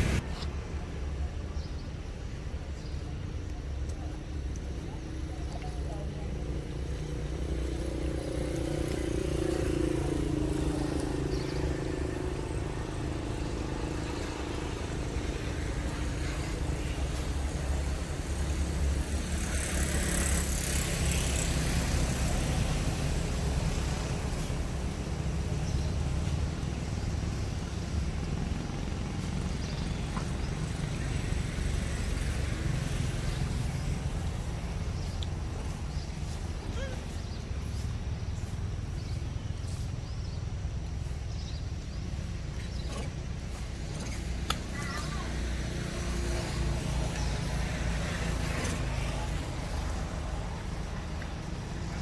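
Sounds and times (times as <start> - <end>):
low outdoor rumble: 0.0 - 19.3.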